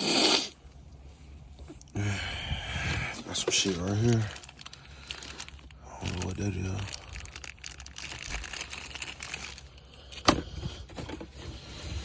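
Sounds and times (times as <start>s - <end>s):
rustling of small parts and wires: 2.8s - 12.0s.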